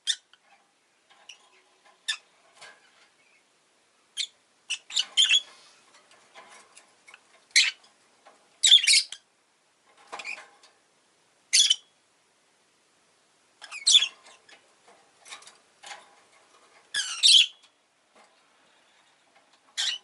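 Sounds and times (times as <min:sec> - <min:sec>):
lovebird chirping: 0:04.1 - 0:05.5, 0:07.1 - 0:07.8, 0:08.6 - 0:09.2, 0:11.5 - 0:11.9, 0:13.6 - 0:14.2, 0:17.0 - 0:17.6, 0:19.8 - 0:20.0.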